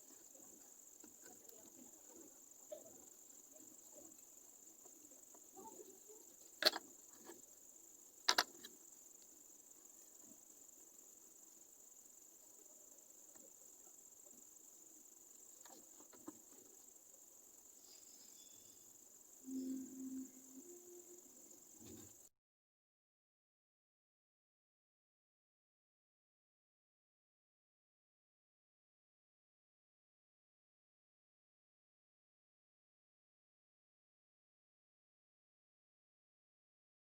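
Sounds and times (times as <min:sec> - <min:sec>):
faint ticks: 0:00.0 - 0:10.8
sharp clicks: 0:08.2 - 0:08.7
faint high-pitched hum: 0:16.6 - 0:22.3.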